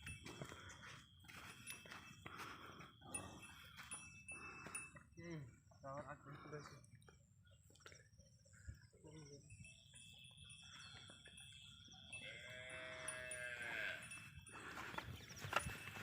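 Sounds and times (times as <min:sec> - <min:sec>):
thin steady high tone: 0:00.0 - 0:16.0
faint high chirping: 0:06.8 - 0:16.0
farm animal calling: 0:10.6 - 0:16.0.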